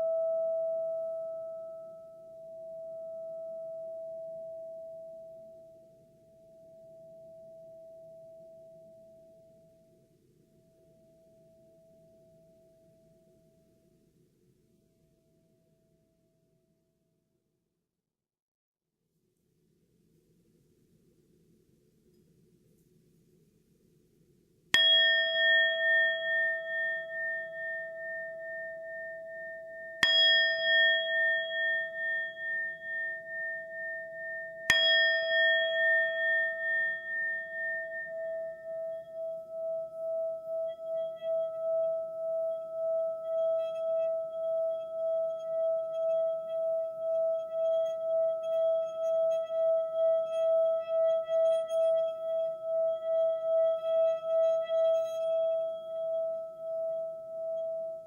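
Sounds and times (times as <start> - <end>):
singing bowl ringing: 0.0 - 9.8, 24.7 - 58.0.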